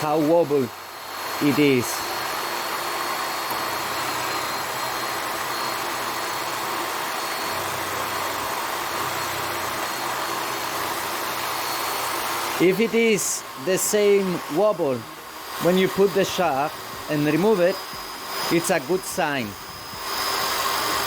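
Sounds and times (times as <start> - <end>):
wood lathe motor whirring: 0.0 - 21.0.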